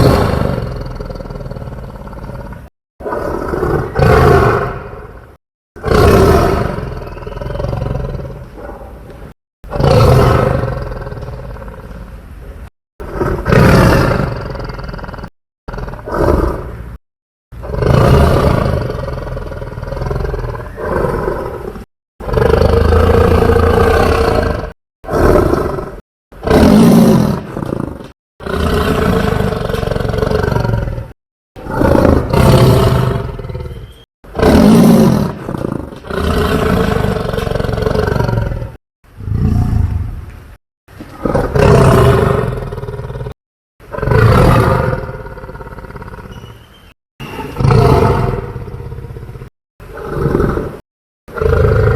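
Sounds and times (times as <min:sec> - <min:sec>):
dinosaur roars: 0:17.6 - 0:33.8, 0:41.2 - 0:46.4, 0:47.6 - 0:51.9.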